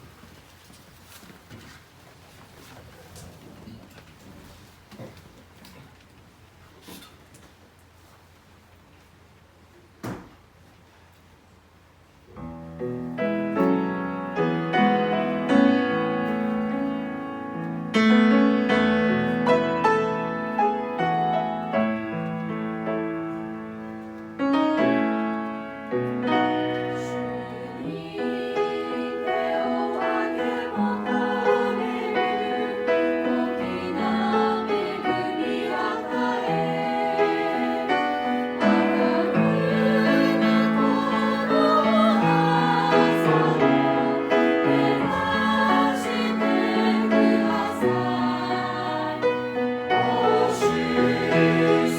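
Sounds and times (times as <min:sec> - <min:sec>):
piano accompaniment: 0:12.4 - 0:51.9
choir singing: 0:26.7 - 0:51.9.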